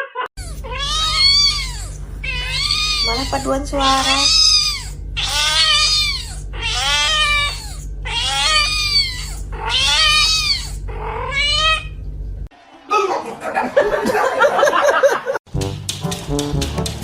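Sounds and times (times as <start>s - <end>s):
cat meowing: 0.4s - 12.0s.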